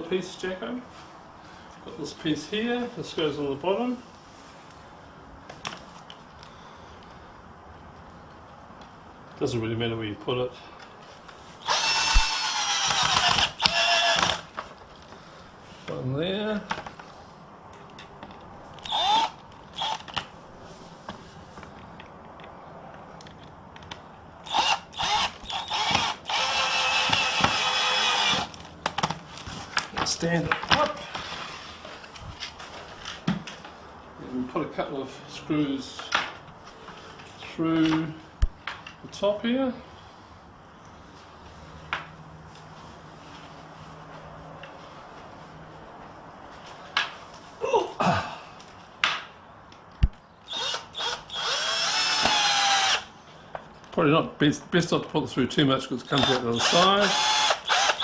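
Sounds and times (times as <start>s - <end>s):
electric drill driving a screw: 11.6s - 14.5s, 18.8s - 20.2s, 24.4s - 28.6s, 50.5s - 53.1s, 56.2s - 58.0s.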